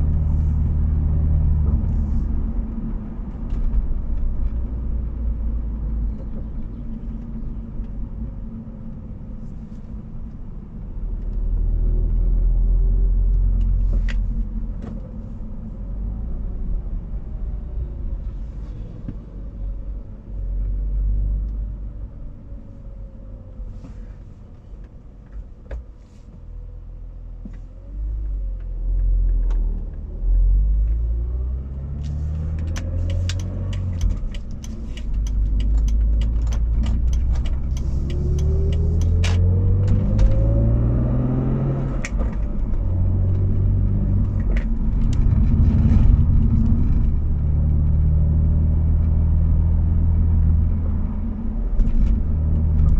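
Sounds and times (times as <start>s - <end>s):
car engine rumble: 0.0s - 52.9s
rising hum: 30.0s - 52.9s
sharp clicks: 32.6s - 39.4s.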